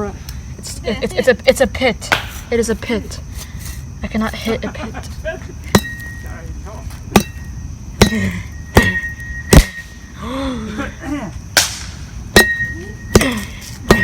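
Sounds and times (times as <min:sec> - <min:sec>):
metal tool pounding ground: 0:05.7 - 0:06.3, 0:07.1 - 0:10.0, 0:12.3 - 0:14.0.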